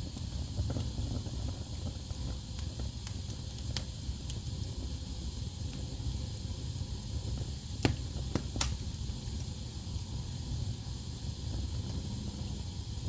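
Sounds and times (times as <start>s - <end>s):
logs crackling and popping: 0.0s - 4.7s, 6.8s - 9.5s
fire rumbling and hissing: 0.0s - 13.0s.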